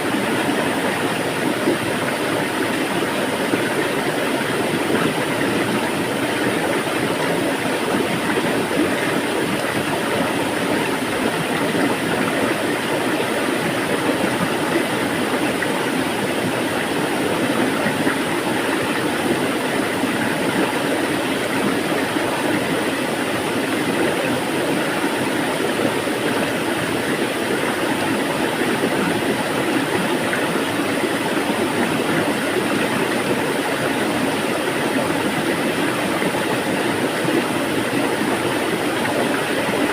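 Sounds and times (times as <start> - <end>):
water rushing: 0.0 - 39.9.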